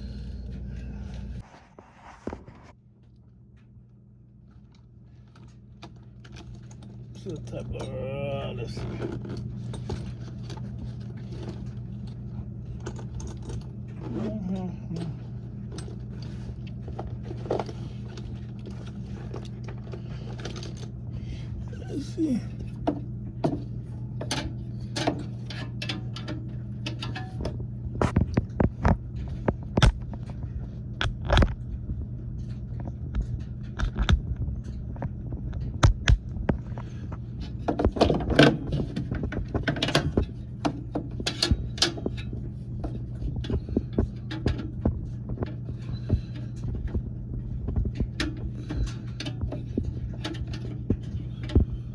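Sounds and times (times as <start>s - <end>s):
steady low hum: 0.0s - 51.9s
tools and metal parts clicking: 5.3s - 20.9s, 22.7s - 27.4s, 37.4s - 43.6s, 48.2s - 51.6s.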